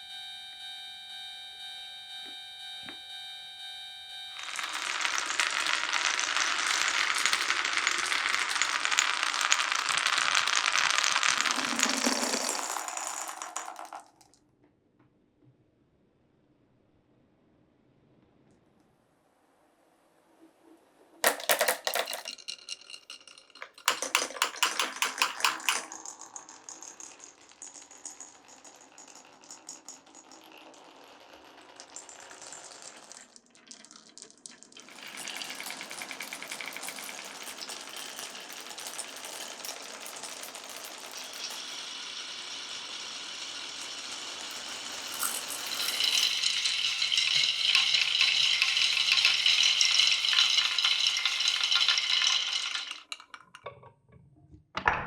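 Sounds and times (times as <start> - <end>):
marbles rolling: 4.3 - 14.4, 21.2 - 53.9
marbles clicking: 4.4 - 14.3, 21.2 - 53.8.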